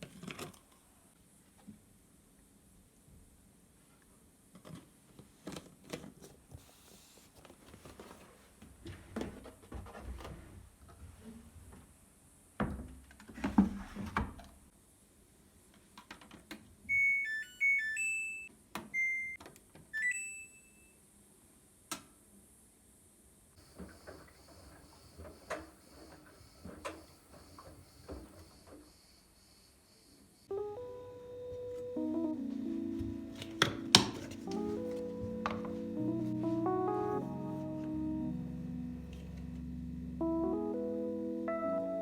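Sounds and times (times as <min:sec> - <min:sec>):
electronic beep chime tune: 0:16.9 - 0:19.4, 0:20.0 - 0:21.0.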